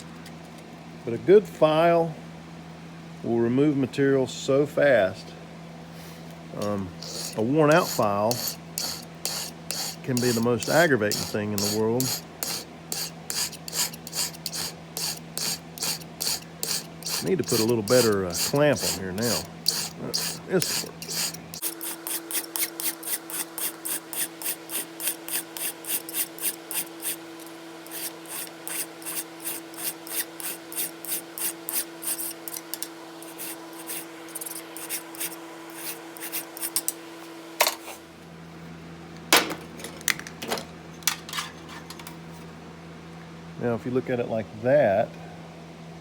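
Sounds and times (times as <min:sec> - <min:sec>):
hand file rasping on steel: 0:06.6 - 0:36.9.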